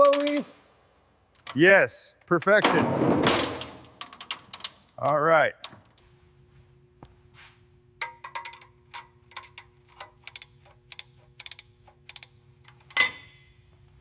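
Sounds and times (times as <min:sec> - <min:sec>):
metal parts clicking and clinking: 0:00.0 - 0:01.7, 0:03.4 - 0:06.0, 0:08.0 - 0:13.8
metallic clank: 0:12.9 - 0:13.6.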